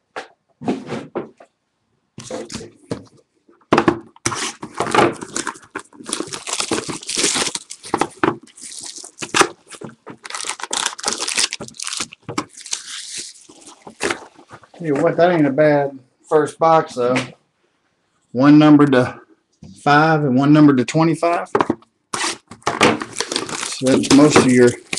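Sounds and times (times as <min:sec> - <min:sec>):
packaging tearing and crinkling: 0:04.2 - 0:14.5, 0:22.2 - 0:24.9.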